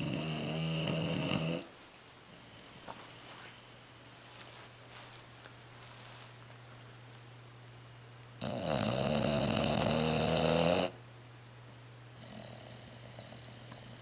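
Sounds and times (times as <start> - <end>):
dog snoring: 0.0 - 1.7, 8.4 - 11.0, 12.2 - 14.0.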